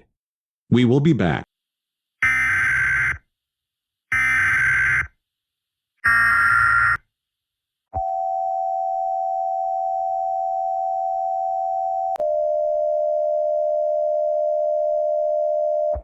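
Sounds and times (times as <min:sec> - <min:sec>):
steady electronic alarm tone: 0:06.0 - 0:07.0, 0:08.0 - 0:16.0.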